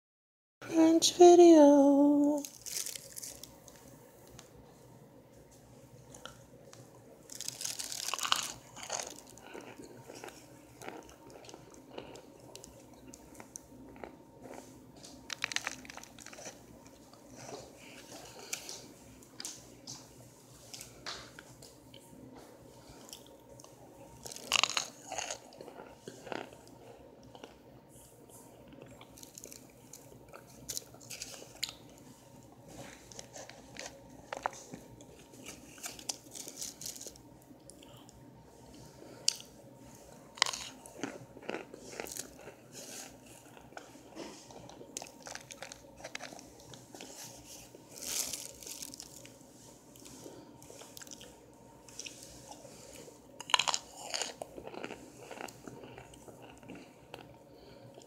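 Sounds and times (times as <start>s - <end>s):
person crunching and chewing: 2.4s - 3.9s, 7.3s - 18.8s, 23.0s - 27.6s, 28.7s - 32.0s, 33.1s - 38.0s, 40.3s - 49.4s, 50.0s - 58.0s.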